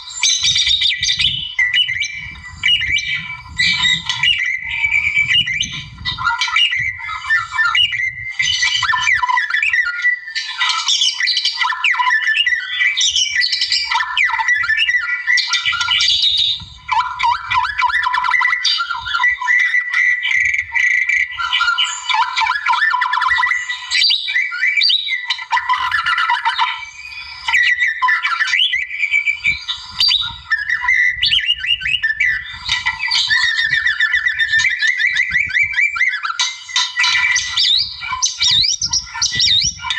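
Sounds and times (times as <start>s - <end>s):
bird singing whistles and trills: 0.0s - 39.9s.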